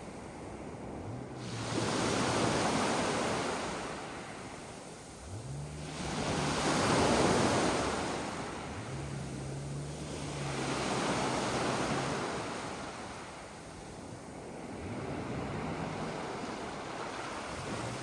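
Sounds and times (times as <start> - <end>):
waves washing up a pebbly beach: 1.4 - 13.7.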